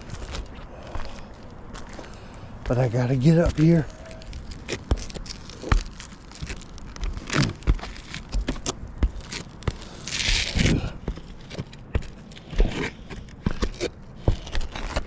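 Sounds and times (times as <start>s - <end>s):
shoes and hands on roof: 0.0s - 15.0s
scrape on roof: 3.8s - 15.0s.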